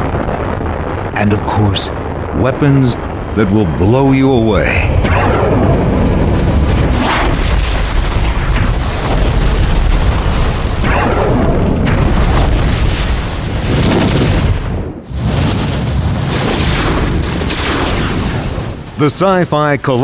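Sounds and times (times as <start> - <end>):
deep rumble: 0.0 - 19.0
sci-fi weapon blasts: 5.0 - 19.0.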